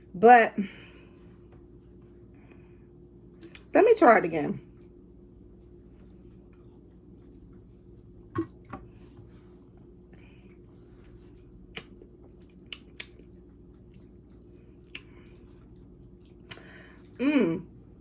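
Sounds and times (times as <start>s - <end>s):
low steady hum: 0.0s - 18.0s
mouth clicks and smacks: 11.7s - 13.3s, 14.8s - 15.5s.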